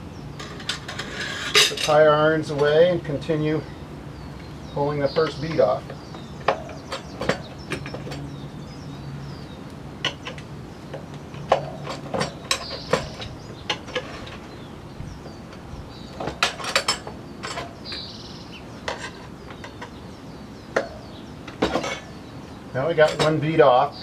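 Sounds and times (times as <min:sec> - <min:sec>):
tire spoons clinking on metal rim: 0:00.3 - 0:24.0.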